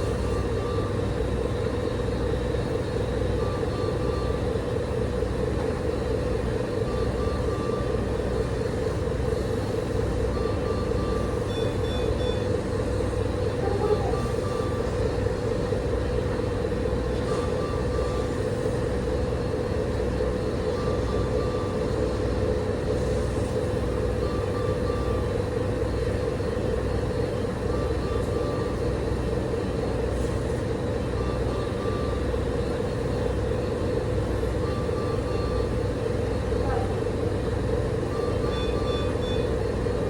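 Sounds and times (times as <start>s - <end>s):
mechanical hum of hospital equipment: 0.0s - 40.0s
short electronic beep: 38.2s - 39.5s.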